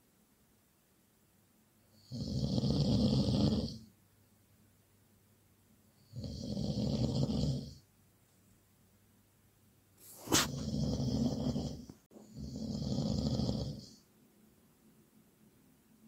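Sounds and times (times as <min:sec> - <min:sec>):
loud snoring: 0:02.0 - 0:03.9, 0:06.1 - 0:07.8, 0:10.2 - 0:14.0.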